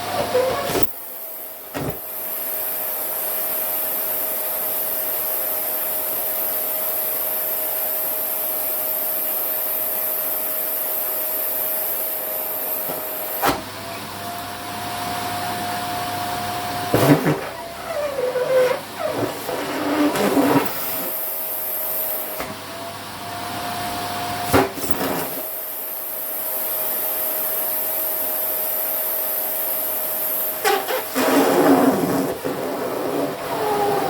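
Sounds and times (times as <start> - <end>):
vacuum cleaner running: 0.0 - 34.0.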